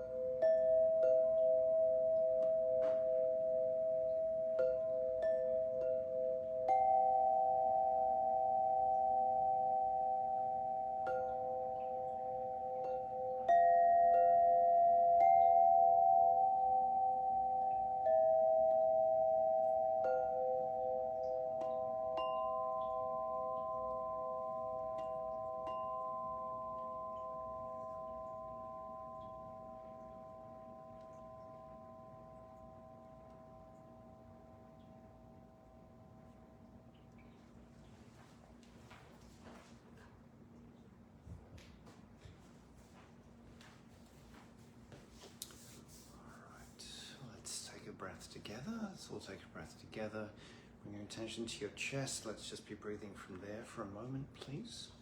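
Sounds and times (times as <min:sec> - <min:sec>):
bell-like tones ringing: 0:00.0 - 0:36.6.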